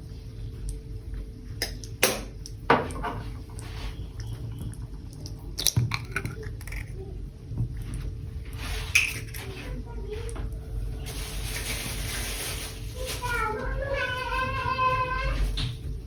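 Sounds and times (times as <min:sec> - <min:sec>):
faint steady hum: 0:00.0 - 0:16.0
kitchenware clattering: 0:01.6 - 0:03.6.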